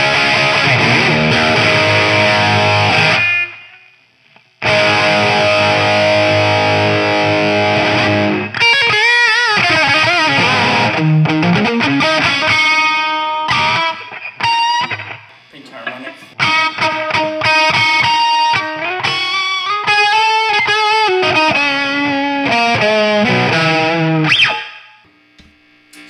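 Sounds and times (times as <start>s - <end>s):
distorted electric guitar: 0.0s - 25.3s.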